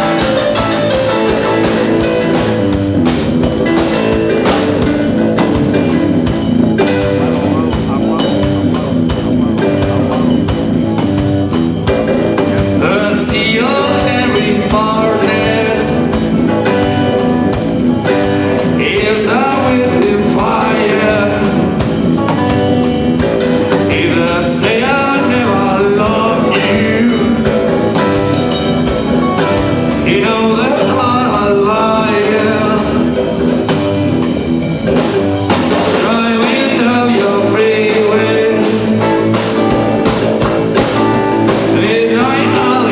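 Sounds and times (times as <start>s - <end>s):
band playing: 0.0s - 42.9s
person singing: 12.2s - 22.7s, 23.4s - 33.6s, 35.7s - 42.9s.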